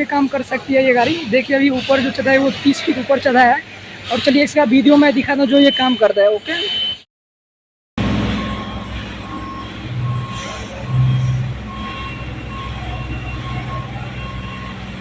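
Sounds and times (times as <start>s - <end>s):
motion alarm beeping: 5.4s - 7.0s, 8.2s - 15.0s
boom lift engine hum: 8.0s - 15.0s.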